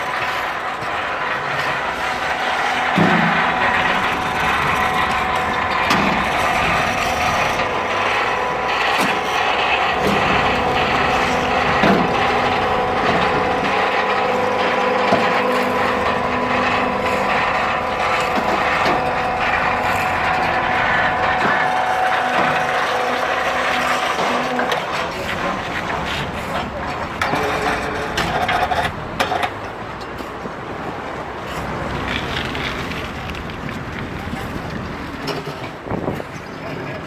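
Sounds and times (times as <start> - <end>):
machine humming: 0.0 - 29.2.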